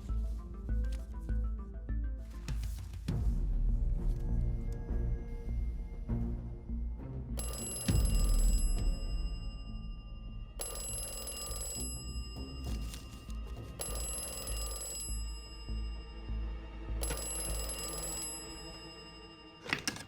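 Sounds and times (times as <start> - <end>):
low background music: 0.0 - 20.0
telephone ringing: 7.4 - 20.0.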